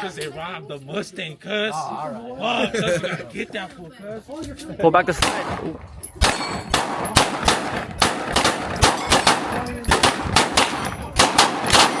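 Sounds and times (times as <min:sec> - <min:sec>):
pistol shots with echo: 0:05.2 - 0:12.0.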